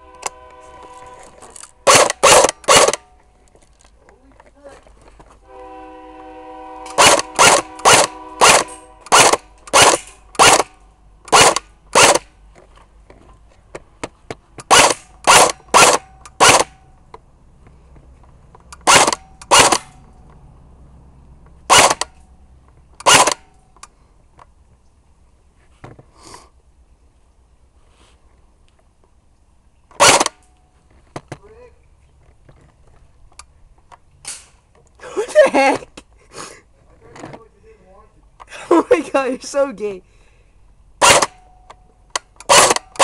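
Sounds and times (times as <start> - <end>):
airsoft gun shots: 1.8 - 3.0, 6.9 - 12.3, 14.7 - 16.8, 18.8 - 19.9, 21.7 - 22.1, 23.0 - 23.5, 30.0 - 30.4, 41.0 - 41.4, 42.5 - 43.0.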